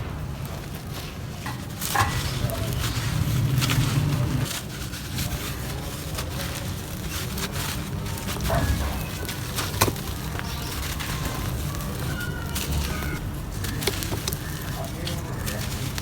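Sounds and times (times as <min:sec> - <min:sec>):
dry earth crumbling: 0:00.0 - 0:16.0.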